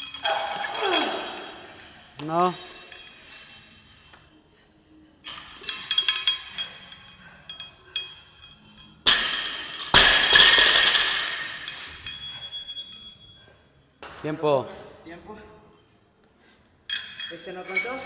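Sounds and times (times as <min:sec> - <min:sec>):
weight plates clinking: 0:00.0 - 0:04.4, 0:05.2 - 0:13.6, 0:16.8 - 0:18.0.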